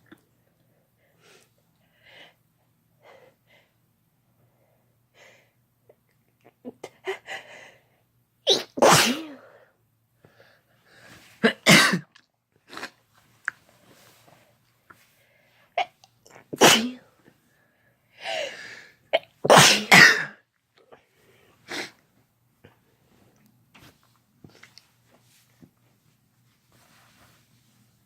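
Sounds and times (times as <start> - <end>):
person sneezing: 8.5 - 9.6, 11.4 - 12.1, 15.8 - 17.1, 19.4 - 20.4, 21.6 - 22.0
soft breathing: 9.4 - 11.4, 13.7 - 15.8.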